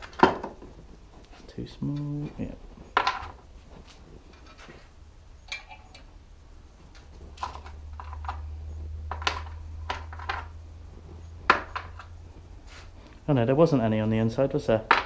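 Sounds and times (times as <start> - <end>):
metal tools clinking: 5.4 - 6.1, 7.4 - 8.4.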